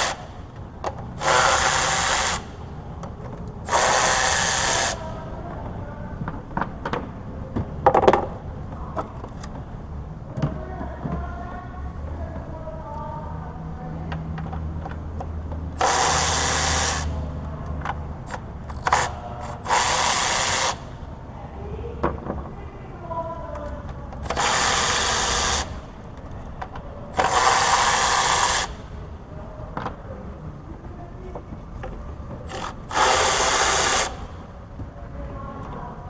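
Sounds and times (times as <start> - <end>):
compressed-air tool hissing: 0.0 - 0.4, 1.2 - 2.6, 3.6 - 5.2, 15.8 - 17.2, 18.3 - 21.0, 24.2 - 25.9, 27.1 - 28.9, 32.5 - 34.4.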